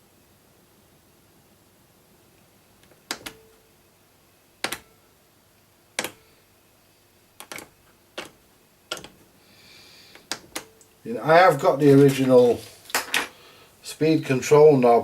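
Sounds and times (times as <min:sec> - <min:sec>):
record player parts clicking: 0:02.8 - 0:03.4, 0:06.0 - 0:06.2, 0:07.4 - 0:09.3, 0:10.1 - 0:10.9.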